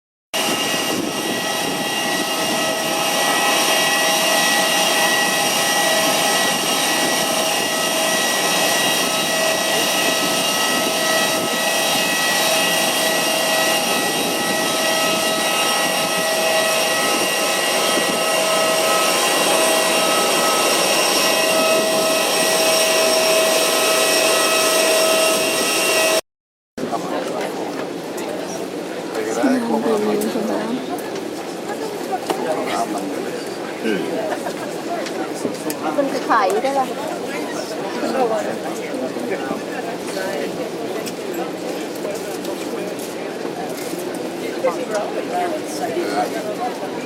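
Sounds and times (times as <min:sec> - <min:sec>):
jet engines running: 0:00.4 - 0:26.2.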